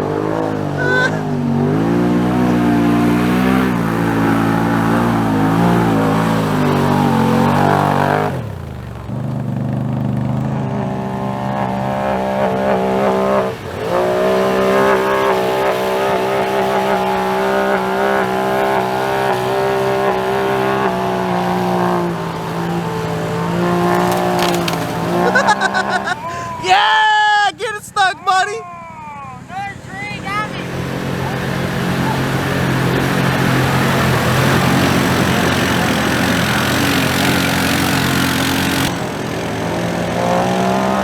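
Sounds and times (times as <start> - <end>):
utv engine revving: 0.0 - 26.6, 29.5 - 41.0.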